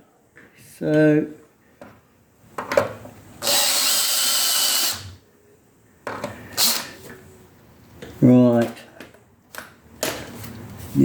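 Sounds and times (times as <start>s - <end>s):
electric drill drilling steel: 3.4s - 5.2s, 6.6s - 6.9s.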